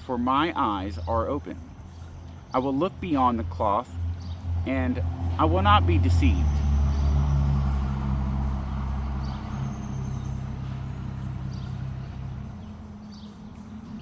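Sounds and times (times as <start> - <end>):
passing vehicle engine hum: 0.0 - 14.0.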